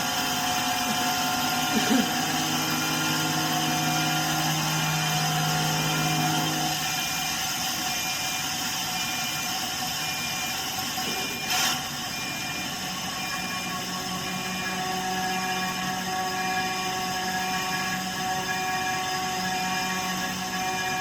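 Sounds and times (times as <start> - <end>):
machine hum: 0.0 - 11.2, 12.2 - 21.0.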